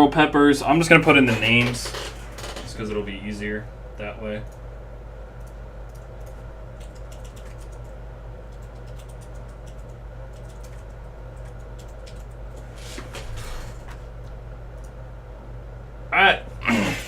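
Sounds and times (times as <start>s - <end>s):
typing on computer keyboard: 5.4s - 12.4s.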